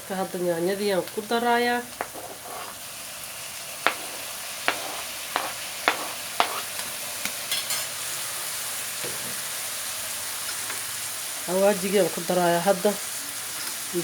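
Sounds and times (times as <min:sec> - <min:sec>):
vegetables sizzling in oil: 0:00.0 - 0:14.0
utensil knocking against pan: 0:02.0 - 0:02.8, 0:03.9 - 0:06.8.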